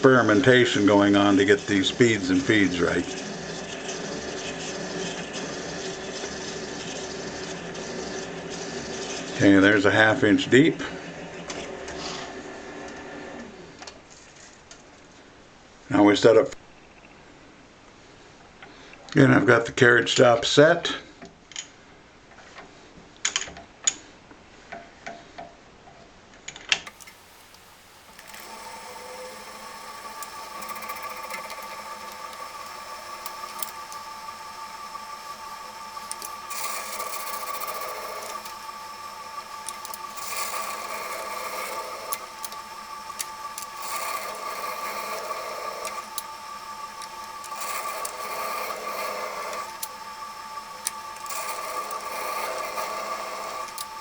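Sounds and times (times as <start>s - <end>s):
rough cutting noise: 0.0s - 10.1s, 26.9s - 54.0s
lathe motor whine: 0.0s - 13.8s, 26.9s - 54.0s
tool clicks: 26.6s - 54.0s.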